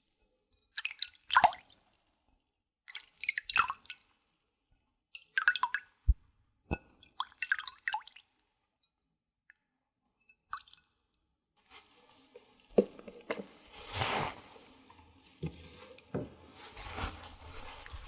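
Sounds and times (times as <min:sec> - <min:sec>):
water splashing and dripping: 0:00.8 - 0:02.0, 0:02.9 - 0:04.3, 0:05.2 - 0:06.2, 0:07.1 - 0:08.4, 0:10.5 - 0:11.0.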